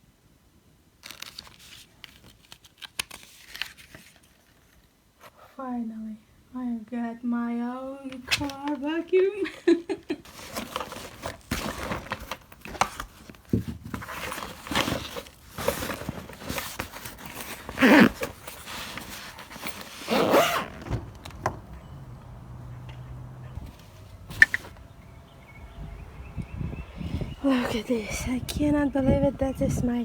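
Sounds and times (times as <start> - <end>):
handling rustling and knocks: 10.2 - 25.0.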